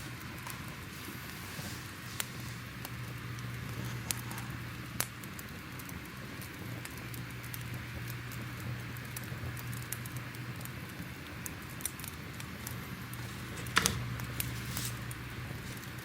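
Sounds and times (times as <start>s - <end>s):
fire crackling and popping: 0.0s - 16.0s
steady hiss: 0.0s - 16.0s.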